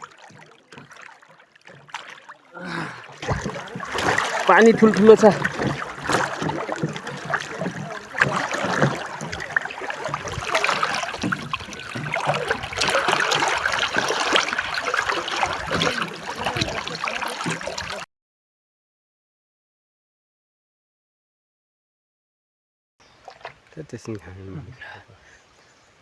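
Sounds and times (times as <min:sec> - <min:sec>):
river water rushing: 0:00.0 - 0:01.2, 0:01.9 - 0:18.0
people splashing in water: 0:00.0 - 0:18.1, 0:23.2 - 0:23.8.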